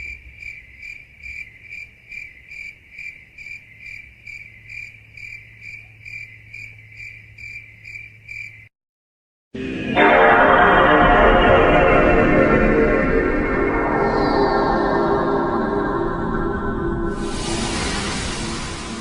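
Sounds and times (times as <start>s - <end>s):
cricket chirping: 0.0s - 8.7s.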